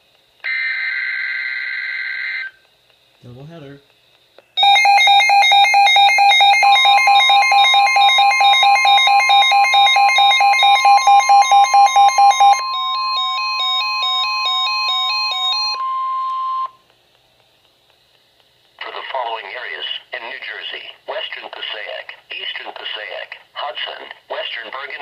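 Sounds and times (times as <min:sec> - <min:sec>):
electronic alarm beeping: 0:04.6 - 0:16.8
steady warning alarm tone: 0:04.6 - 0:16.8.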